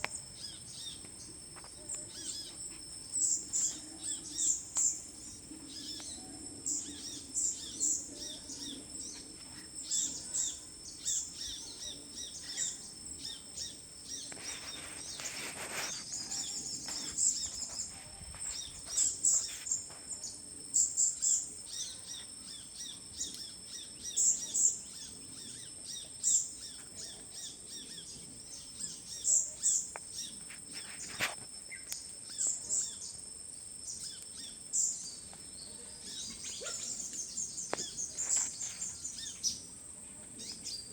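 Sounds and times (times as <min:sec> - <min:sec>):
small birds chirping: 0:00.0 - 0:40.9
brief rustling: 0:14.3 - 0:20.0.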